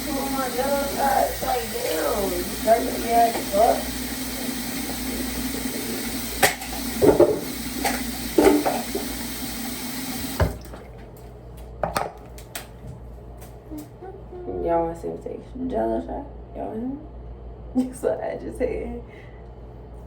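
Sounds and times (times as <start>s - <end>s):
water running: 0.0s - 11.3s.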